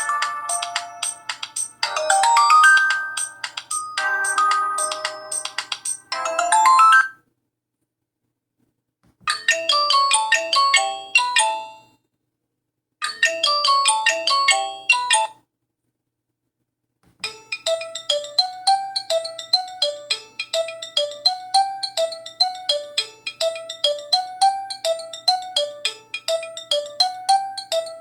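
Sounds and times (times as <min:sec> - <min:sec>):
mobile phone ringtone melody: 0:00.0 - 0:07.2, 0:13.0 - 0:15.3, 0:17.2 - 0:28.0.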